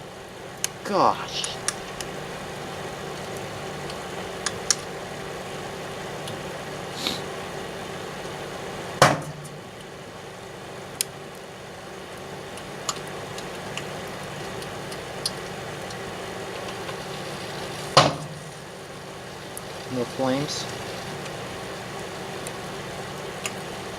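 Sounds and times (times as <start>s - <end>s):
microwave oven humming: 0.0s - 23.9s
small electrical ticks: 1.4s - 5.0s, 10.9s - 23.9s
loud sharp electrical crack: 14.5s - 23.8s.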